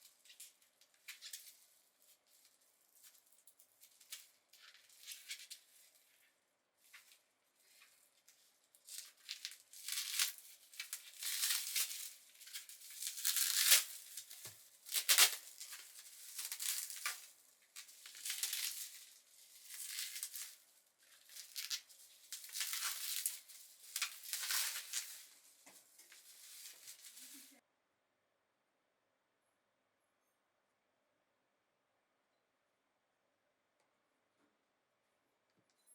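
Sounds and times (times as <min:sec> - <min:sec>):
packaging crinkling and tearing: 0:08.3 - 0:27.6.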